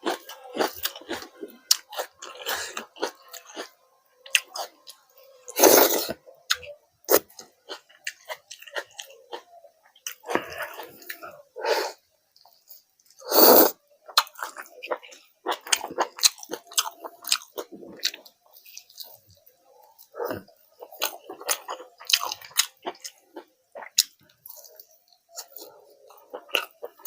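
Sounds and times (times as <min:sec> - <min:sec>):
wet chewing and lip smacking: 0:14.1 - 0:27.0.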